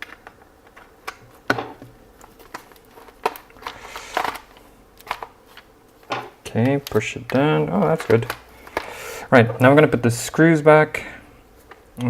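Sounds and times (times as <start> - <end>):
plastic parts clicking and tapping: 0.0 - 8.9.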